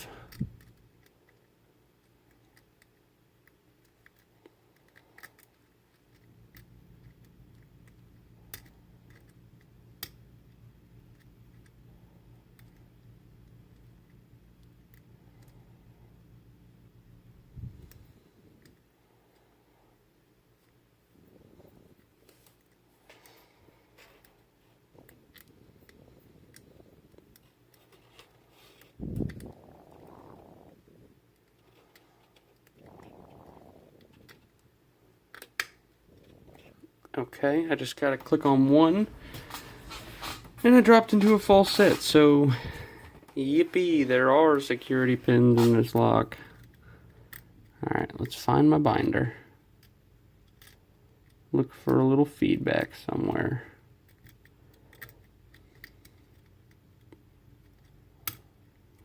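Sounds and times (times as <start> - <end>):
low steady hum: 0.0 - 59.0.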